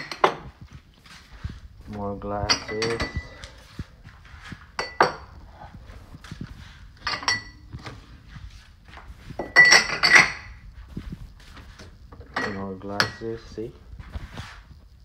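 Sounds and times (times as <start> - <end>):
drinking glasses clinking: 2.4 - 3.5, 4.8 - 5.4, 7.0 - 7.8, 9.4 - 10.6, 12.3 - 13.4.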